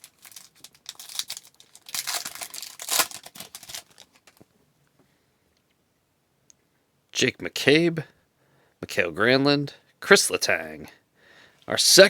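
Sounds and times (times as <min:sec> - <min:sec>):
cards being handled: 0:00.0 - 0:04.4
wrapper tearing and crinkling: 0:00.0 - 0:04.4.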